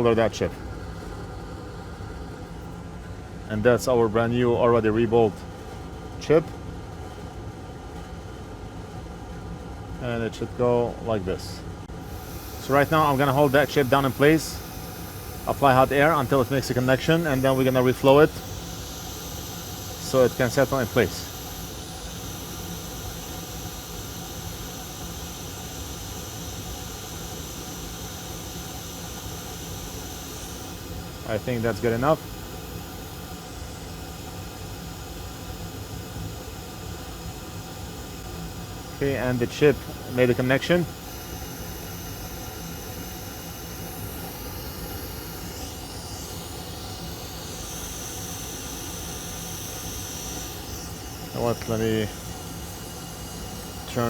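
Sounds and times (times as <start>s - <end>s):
hot air blower hissing: 11.3s - 54.0s.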